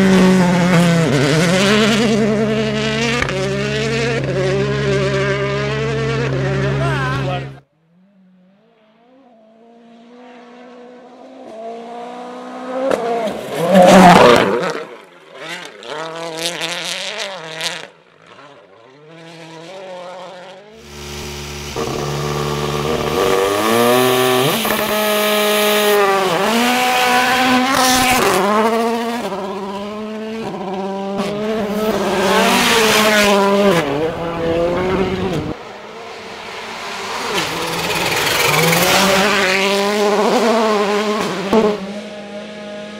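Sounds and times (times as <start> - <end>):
car engine revving and shifting gears: 0.0 - 42.9
rally car engines at full throttle: 0.0 - 42.9
car passing by: 30.4 - 41.9.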